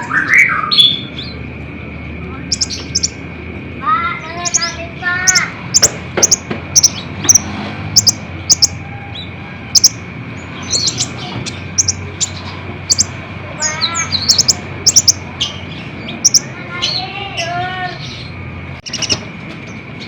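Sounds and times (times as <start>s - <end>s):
falling bird chirps: 2.5s - 3.2s, 4.2s - 20.0s
sunbird calling high chips: 2.5s - 19.3s.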